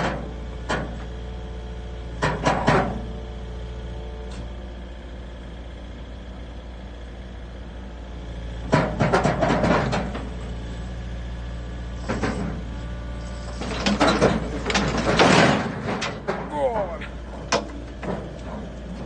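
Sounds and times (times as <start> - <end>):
vehicle rattling and clanking: 0.0 - 5.0, 6.8 - 19.0
engine running: 0.0 - 19.0.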